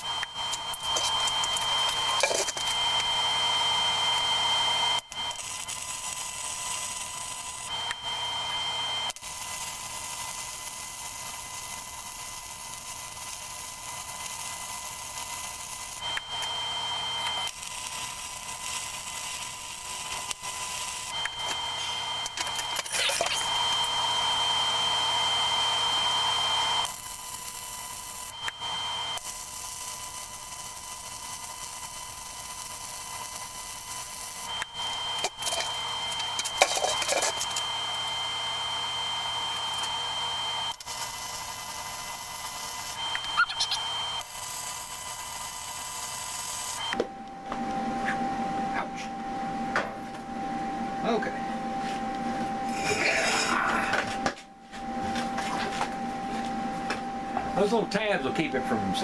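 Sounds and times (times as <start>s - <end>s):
arc welding crackling hiss: 0.0s - 47.0s.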